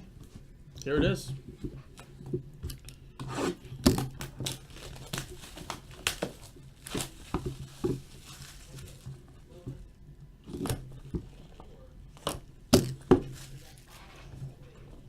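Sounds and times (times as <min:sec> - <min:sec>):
plastic wrapping tearing and crinkling: 0:04.0 - 0:09.4, 0:12.8 - 0:14.0.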